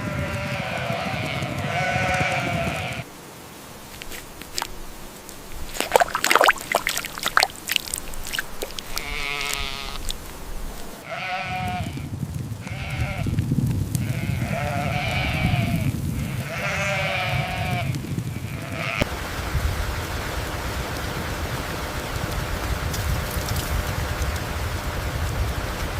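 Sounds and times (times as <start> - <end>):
sheep bleating: 0.0 - 3.1, 8.8 - 10.1, 11.0 - 13.4, 14.0 - 19.1.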